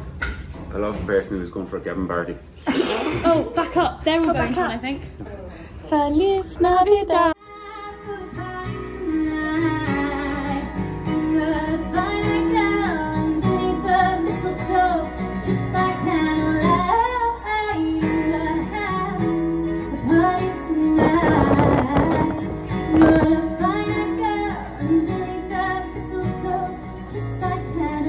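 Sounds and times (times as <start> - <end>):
woman singing: 5.9 - 28.0
guitar accompaniment: 7.4 - 28.0.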